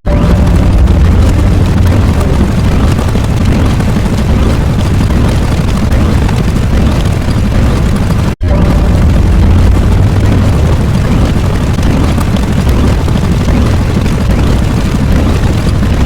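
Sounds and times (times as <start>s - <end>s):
loud low rumbling roar: 0.0s - 4.5s, 8.4s - 14.6s.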